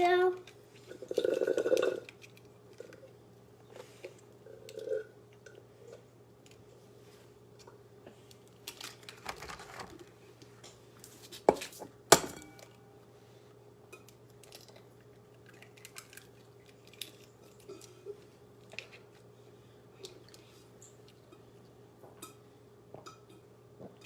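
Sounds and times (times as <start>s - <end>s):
bowl and utensils clinking: 12.1s - 12.8s.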